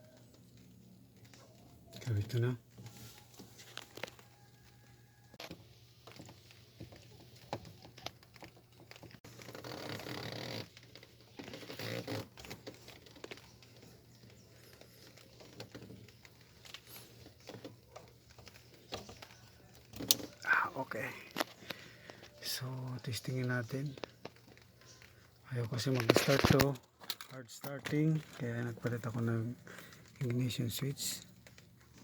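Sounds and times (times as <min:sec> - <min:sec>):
rustling: 0:00.0 - 0:32.0
plastic and metal parts clicking: 0:07.1 - 0:20.4.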